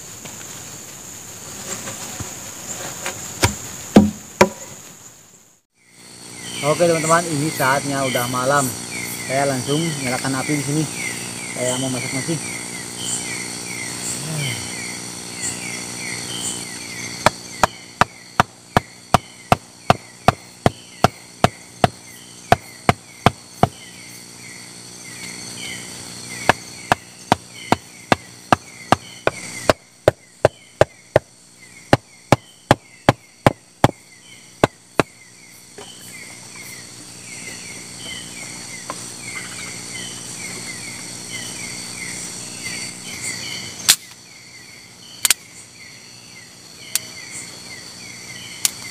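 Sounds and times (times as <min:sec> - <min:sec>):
insects chirping: 0:00.0 - 0:48.9
blade chopping wood: 0:03.4 - 0:04.7, 0:16.6 - 0:24.0, 0:26.3 - 0:34.0, 0:34.6 - 0:35.2.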